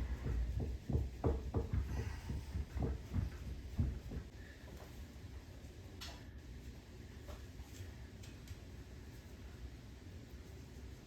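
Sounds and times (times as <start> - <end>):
dull knocks and taps on metal parts: 0.2 - 4.3.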